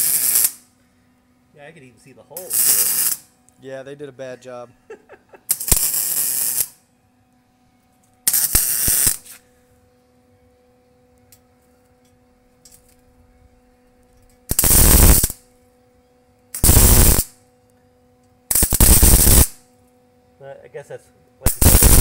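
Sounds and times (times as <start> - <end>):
welding bursts: 0.0 - 0.7, 2.4 - 3.3, 5.4 - 6.8, 8.3 - 9.4, 14.5 - 15.4, 16.5 - 17.4, 18.5 - 19.6, 21.5 - 22.0
steady electrical hum: 0.0 - 22.0.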